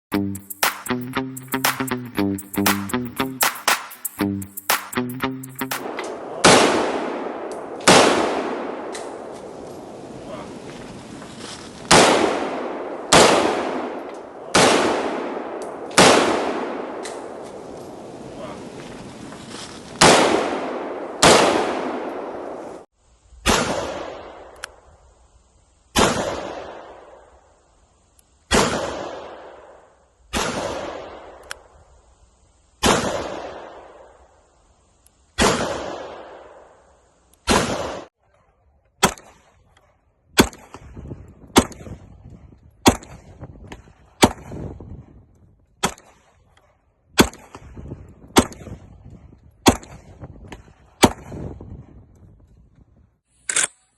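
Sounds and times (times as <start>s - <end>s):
sharp gunshots: 5.7s - 9.2s, 11.9s - 17.3s, 20.0s - 22.5s, 23.4s - 24.5s, 26.0s - 27.2s, 28.5s - 29.7s, 30.3s - 31.3s, 32.8s - 34.0s
gunshots with echoing tails: 5.8s - 9.3s, 11.9s - 17.4s, 20.0s - 22.8s.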